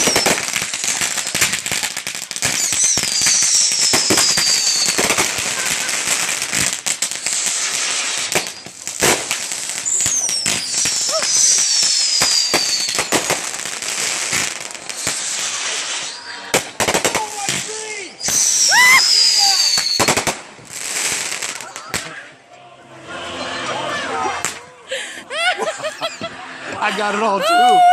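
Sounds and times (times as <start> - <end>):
falling firework whistle: 0.0 - 22.0
fireworks bangs and crackles: 0.0 - 22.3, 24.4 - 24.7.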